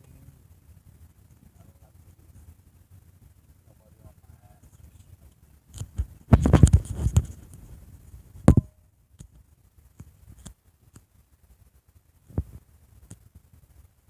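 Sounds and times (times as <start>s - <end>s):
faint ticks: 12.3s - 13.8s.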